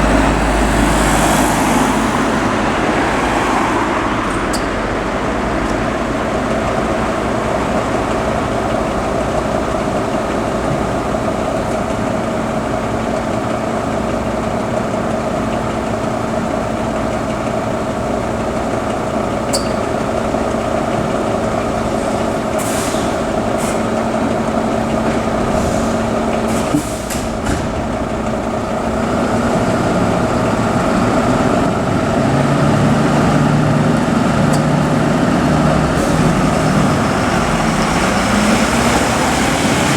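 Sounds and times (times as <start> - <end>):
diesel engines idling: 0.0 - 39.9
low engine note: 0.0 - 39.9
air hiss: 22.6 - 23.9.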